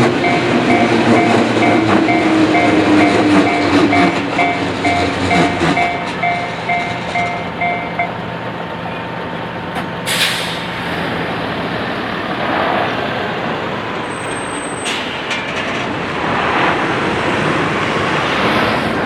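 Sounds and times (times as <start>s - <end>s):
level crossing bell ringing: 0.0s - 8.2s
train rumbling and clattering: 0.0s - 19.0s.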